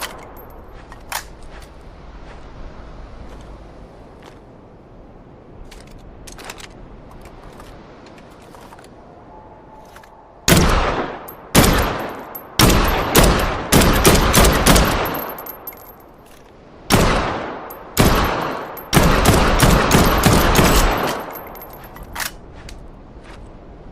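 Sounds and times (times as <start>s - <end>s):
rifle gunshots with echo: 10.5s - 15.2s, 16.9s - 21.3s.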